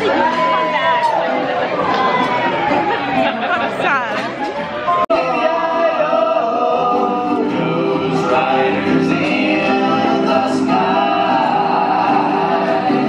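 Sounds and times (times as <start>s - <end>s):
voices singing held notes: 4.9s - 13.0s.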